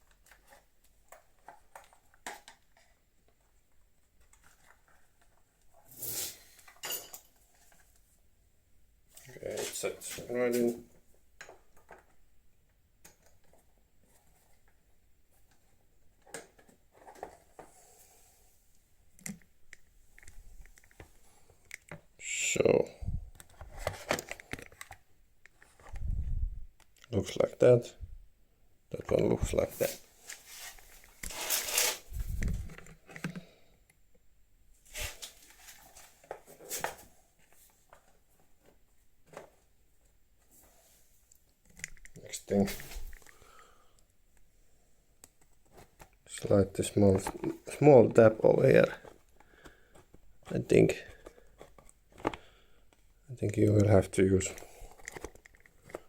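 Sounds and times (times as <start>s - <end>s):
plastic parts clicking and knocking: 0.0s - 5.7s, 11.4s - 13.8s, 15.4s - 17.7s, 19.1s - 22.2s, 23.3s - 26.1s, 31.2s - 34.1s, 41.4s - 43.4s, 48.6s - 56.0s.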